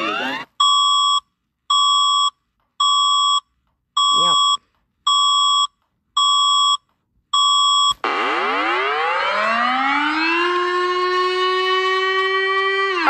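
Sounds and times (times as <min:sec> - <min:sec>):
siren winding up: 0:00.0 - 0:00.7, 0:07.8 - 0:13.0
electronic alert beeps: 0:04.0 - 0:06.8.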